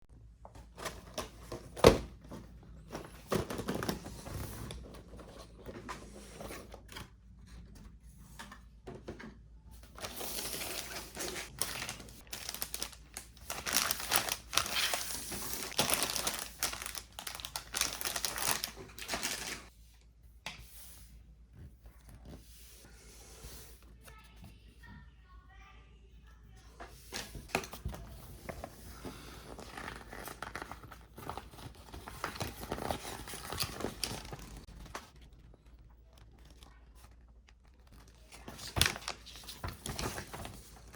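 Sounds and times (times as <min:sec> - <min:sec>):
plastic bags crinkling: 0:10.0 - 0:19.7.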